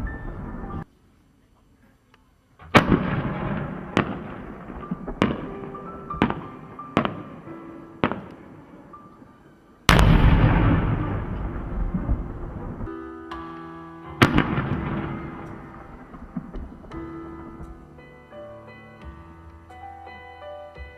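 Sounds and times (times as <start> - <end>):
firework shell burst rumbling: 2.6 - 8.6, 9.9 - 12.9, 14.2 - 17.8
firework bangs: 2.6 - 9.0, 9.9 - 13.0, 14.2 - 17.8.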